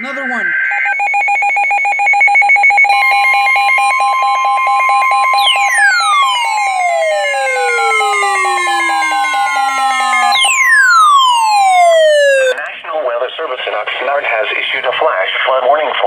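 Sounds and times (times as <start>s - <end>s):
pulsing two-tone beep: 0.7s - 12.6s
falling siren-like sweep: 2.9s - 12.6s
steady high tone: 2.9s - 12.7s.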